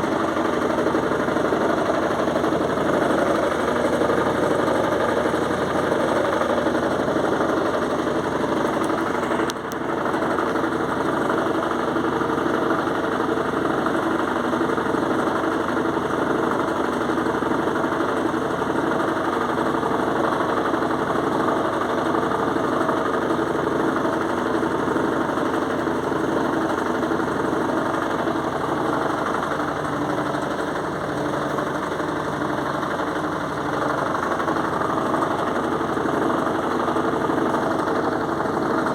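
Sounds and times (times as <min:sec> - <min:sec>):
washing machine spinning: 0:00.0 - 0:38.9.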